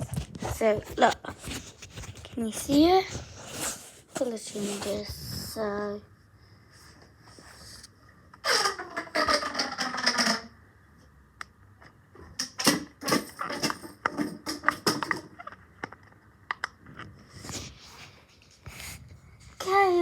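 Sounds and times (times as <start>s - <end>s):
fidget toy rustling: 0.0s - 5.9s.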